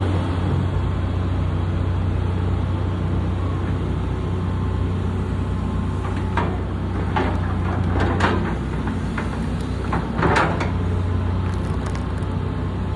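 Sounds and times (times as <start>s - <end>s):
excavator diesel engine running: 0.0s - 12.9s
sharp knocks and clatters: 6.0s - 12.2s.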